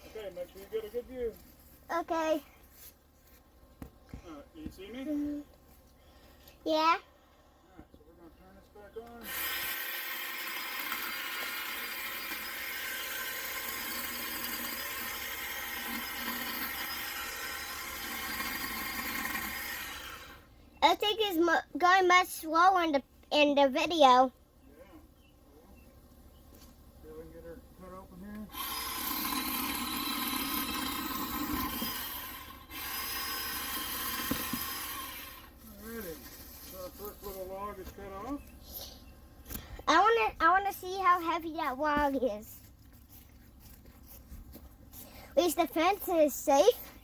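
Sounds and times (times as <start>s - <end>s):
electric chainsaw cutting wood: 9.2s - 20.5s, 28.5s - 36.0s.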